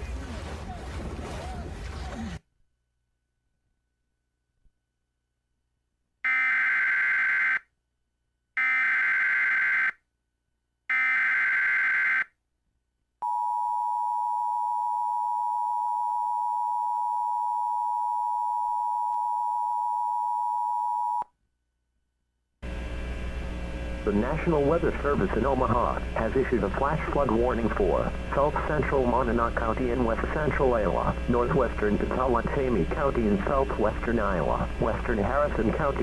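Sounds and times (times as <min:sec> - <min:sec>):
steady attention tone: 0:22.6 - 0:36.0.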